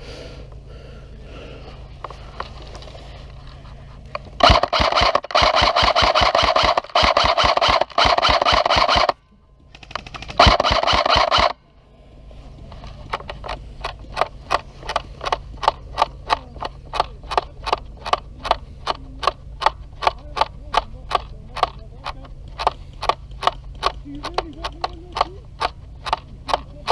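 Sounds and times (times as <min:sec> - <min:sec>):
sharp ticks: 0:04.1 - 0:11.6, 0:12.7 - 0:26.9
airsoft gun firing bursts: 0:04.4 - 0:11.6, 0:12.8 - 0:26.9.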